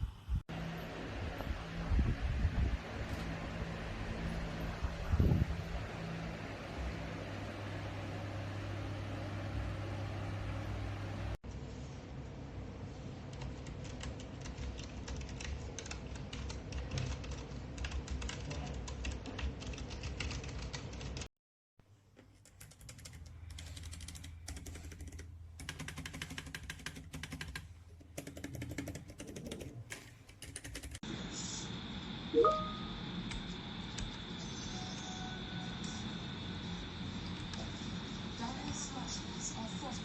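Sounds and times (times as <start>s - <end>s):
steady low hum: 0.0s - 16.7s, 31.0s - 40.0s
mechanical keyboard typing: 13.3s - 21.2s, 22.4s - 27.6s, 28.2s - 31.0s.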